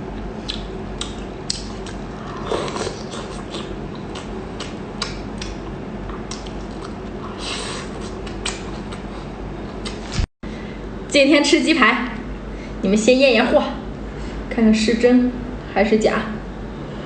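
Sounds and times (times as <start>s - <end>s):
person chewing food: 0.4s - 10.2s.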